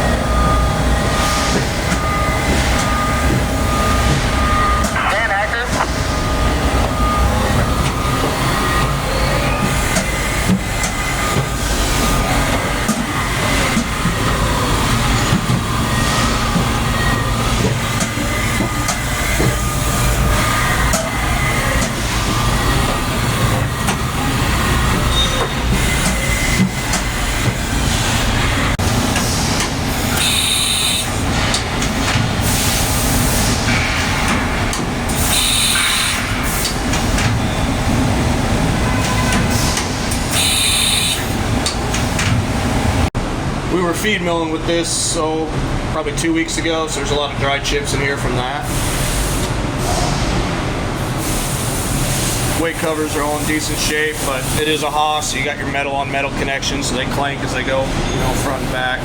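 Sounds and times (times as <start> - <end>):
machining center rumbling: 0.0 - 48.7
hissing bursts: 29.9 - 31.2, 40.3 - 41.4.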